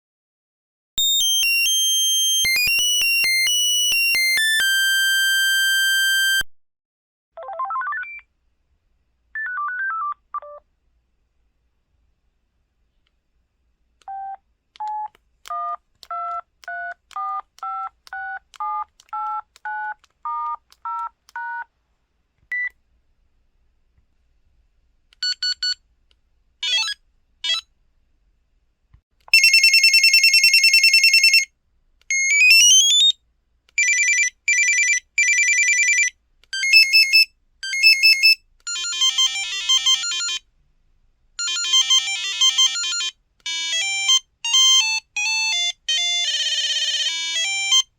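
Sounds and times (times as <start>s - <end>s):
mobile phone beep melody: 1.0s - 6.4s, 36.6s - 40.4s, 41.4s - 47.9s.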